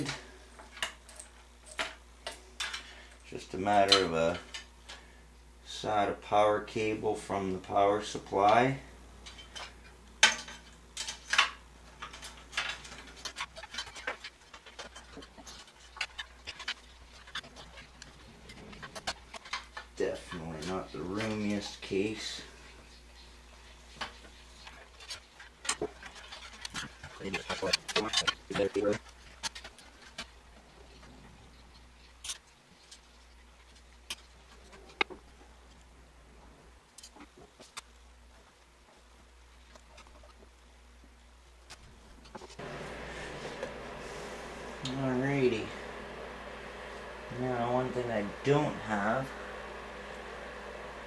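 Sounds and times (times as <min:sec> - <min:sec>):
low steady hum: 0:00.0 - 0:51.0
cable plastic rustling: 0:23.8 - 0:31.2.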